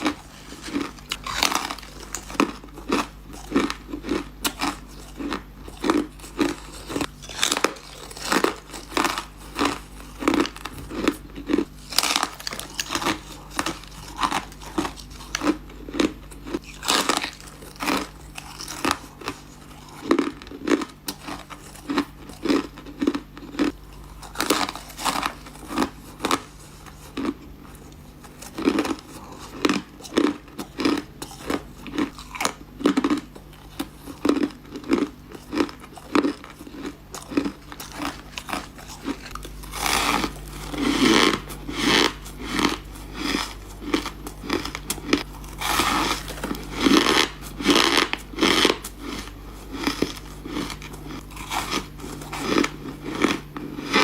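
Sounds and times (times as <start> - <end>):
person crunching ice: 0.0 - 54.0.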